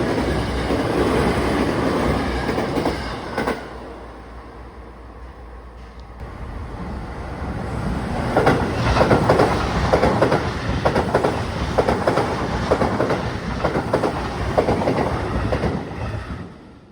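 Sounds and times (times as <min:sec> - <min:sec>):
train wheels clacking: 0:00.0 - 0:03.8, 0:08.1 - 0:16.5
electric train passing: 0:00.0 - 0:16.9.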